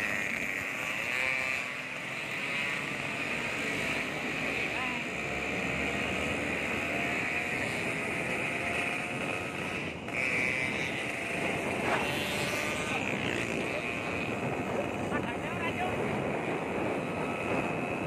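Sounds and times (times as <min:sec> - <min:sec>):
two-stroke motorcycle exhaust: 0:00.0 - 0:18.0
wind noise: 0:06.5 - 0:18.0.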